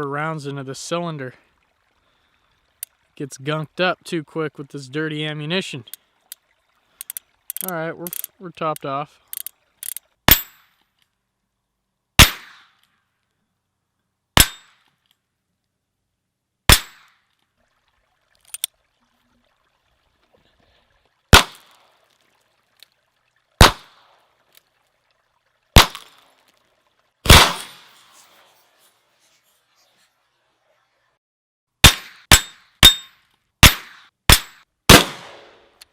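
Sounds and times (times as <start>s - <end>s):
faint clicks: 2.7s - 3.0s, 5.8s - 10.1s
revolver shots: 27.3s - 28.0s.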